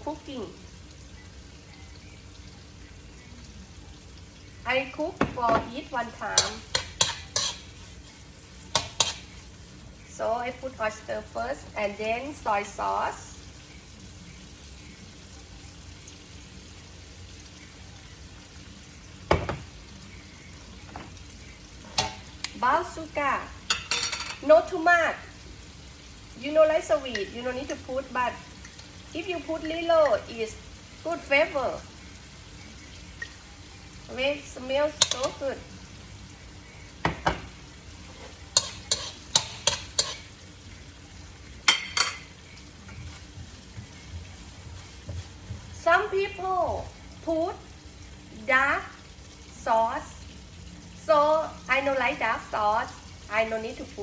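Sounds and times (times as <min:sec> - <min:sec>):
meat and peppers sizzling in pan: 0:00.0 - 0:54.0
spatula clacking and scraping pan: 0:05.2 - 0:07.9, 0:08.7 - 0:09.4, 0:34.9 - 0:35.4, 0:37.0 - 0:40.4.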